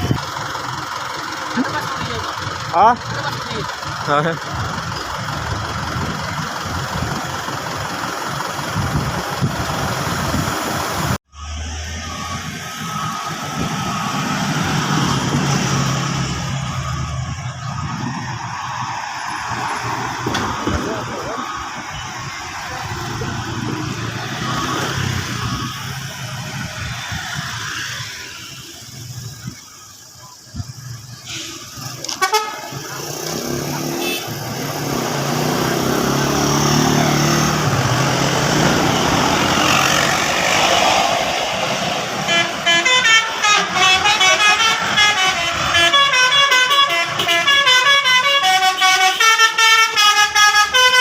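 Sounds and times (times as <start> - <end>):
bus engine rumbling: 0.0 - 51.0
vehicle passing: 10.4 - 29.4, 31.7 - 48.2.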